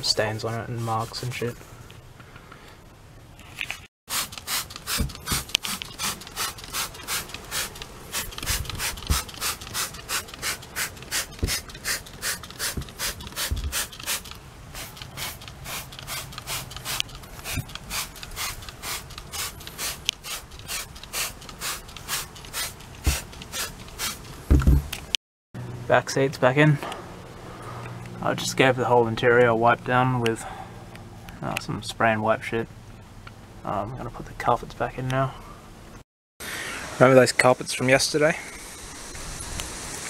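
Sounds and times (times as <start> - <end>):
hand scrubbing car interior: 0.0 - 1.5, 4.1 - 24.2.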